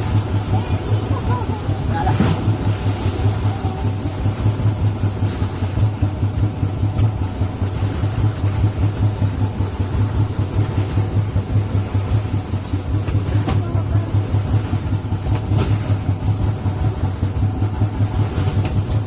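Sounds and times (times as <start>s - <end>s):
boat engine running: 0.0s - 19.0s
wind and water hiss: 0.0s - 19.0s.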